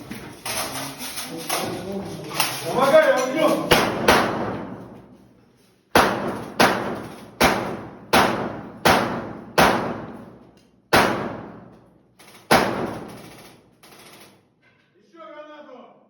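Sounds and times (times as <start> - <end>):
airsoft gun shots echoing: 3.7 - 4.9, 5.9 - 11.7, 12.4 - 13.4.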